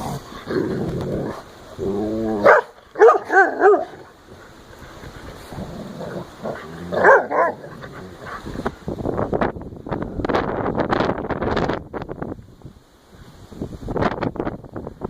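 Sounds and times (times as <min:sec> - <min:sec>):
low rustling: 0:00.0 - 0:14.7
dog yipping and barking: 0:02.4 - 0:04.0, 0:07.0 - 0:07.7.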